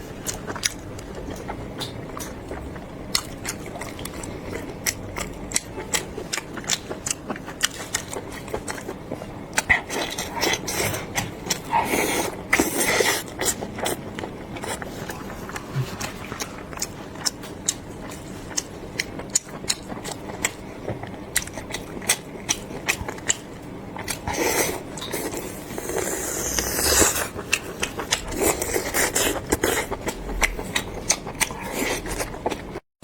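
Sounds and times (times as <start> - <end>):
wet chewing and mouth smacks: 12.5 - 25.4, 26.0 - 32.8.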